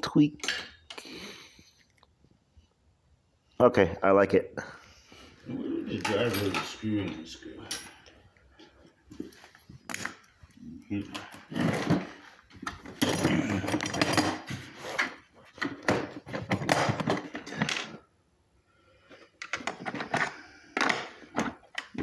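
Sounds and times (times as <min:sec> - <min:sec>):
metal tools clattering: 0:00.4 - 0:00.8, 0:05.9 - 0:08.1, 0:11.1 - 0:18.0.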